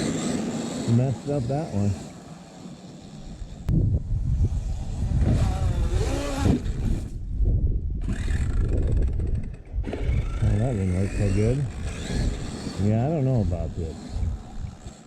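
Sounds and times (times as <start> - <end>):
electric motor whining: 0.0 - 7.3, 8.0 - 15.0
drivetrain and tyre noise: 8.0 - 15.0.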